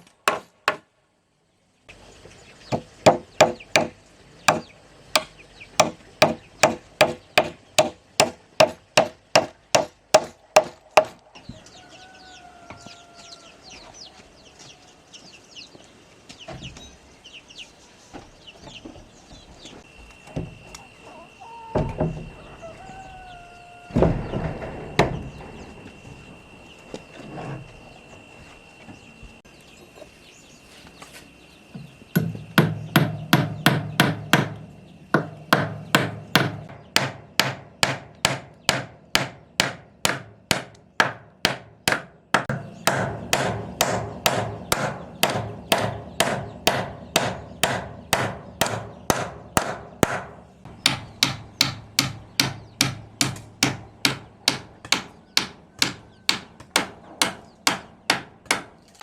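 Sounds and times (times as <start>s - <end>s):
hand hammering: 0.0s - 0.9s, 3.1s - 3.9s, 4.5s - 11.2s, 32.1s - 58.7s.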